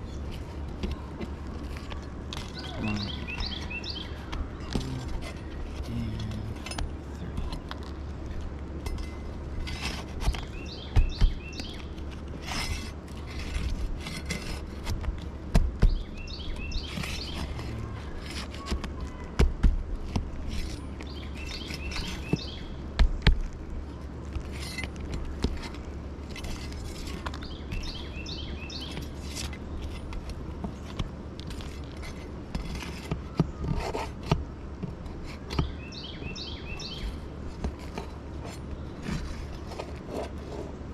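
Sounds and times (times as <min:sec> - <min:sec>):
steady low rumble: 0:00.0 - 0:18.3
birds chirping: 0:00.0 - 0:40.9
tools knocking on roof shingles: 0:09.7 - 0:11.8, 0:12.4 - 0:20.8.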